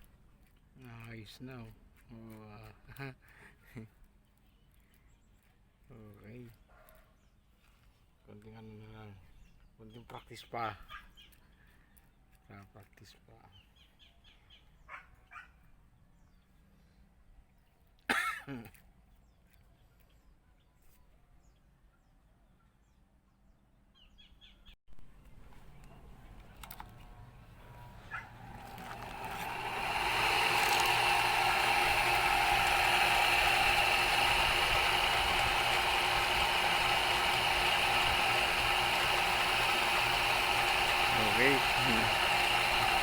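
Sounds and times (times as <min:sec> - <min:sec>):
electric power tool running: 0:27.6 - 0:43.0.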